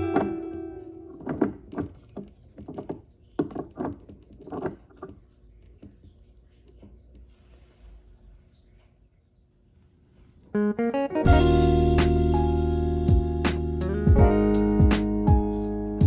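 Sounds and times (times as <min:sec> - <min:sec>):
guitar note: 0:00.0 - 0:01.7, 0:10.6 - 0:15.9.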